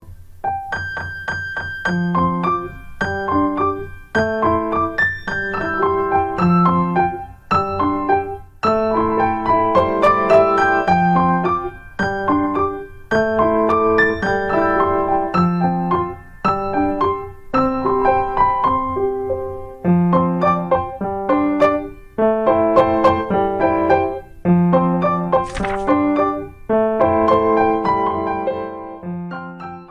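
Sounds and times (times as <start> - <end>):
piano music: 0.4 - 24.2.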